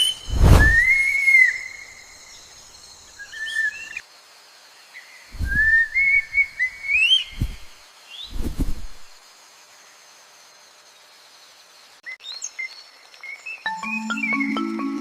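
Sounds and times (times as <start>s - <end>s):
bird-like whistled calls: 0.0s - 2.0s, 3.2s - 4.0s, 5.4s - 7.7s.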